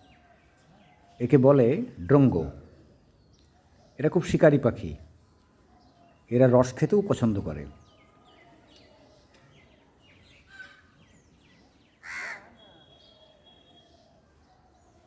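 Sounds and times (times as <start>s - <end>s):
small birds chirping: 0.0s - 15.0s
crow cawing: 12.0s - 12.6s.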